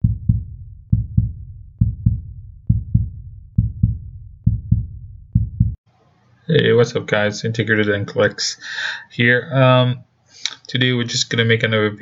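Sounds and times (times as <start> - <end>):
heartbeat thumps: 0.0 - 5.8.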